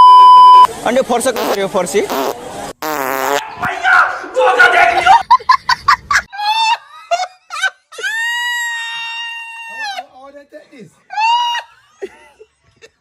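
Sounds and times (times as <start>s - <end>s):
fluttering fart noise: 1.4s - 3.4s
giggling laugh sound effect: 5.0s - 8.4s.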